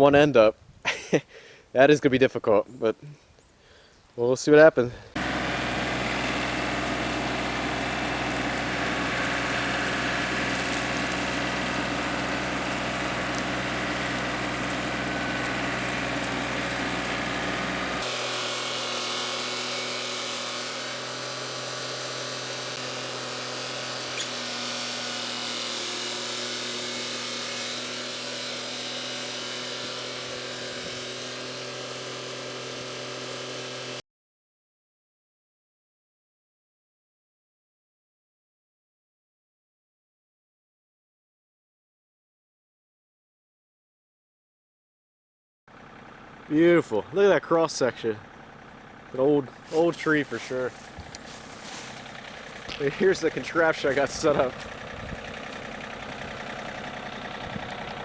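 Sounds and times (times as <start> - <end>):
tractor engine running: 5.2 - 34.0, 45.7 - 58.0.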